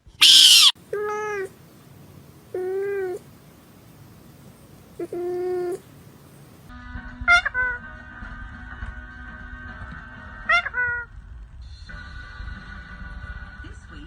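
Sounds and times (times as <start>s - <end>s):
cat meowing: 0.0s - 1.5s.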